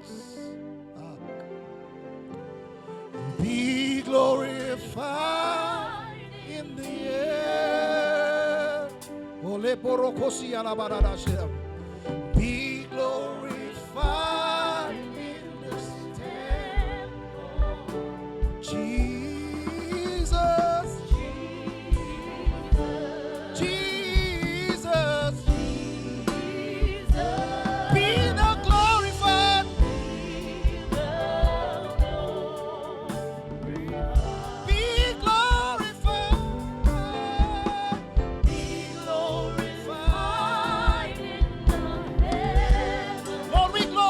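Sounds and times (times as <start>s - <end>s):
person singing: 0.0s - 1.6s, 12.3s - 44.0s
drum hits: 25.4s - 32.4s, 33.1s - 44.0s.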